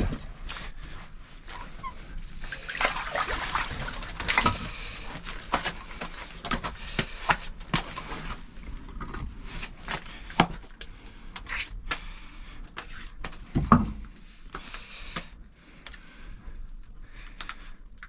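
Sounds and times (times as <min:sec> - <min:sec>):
water splashing and sloshing: 0:00.0 - 0:18.0.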